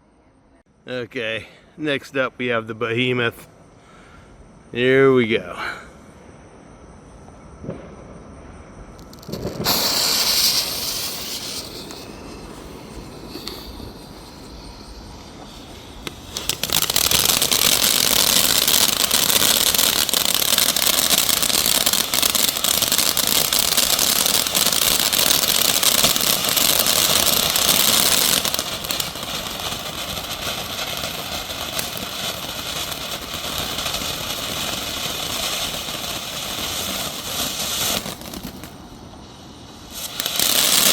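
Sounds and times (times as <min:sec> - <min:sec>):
fireworks fountain crackling hiss: 0:08.8 - 0:40.9
fuse hissing: 0:09.1 - 0:40.9.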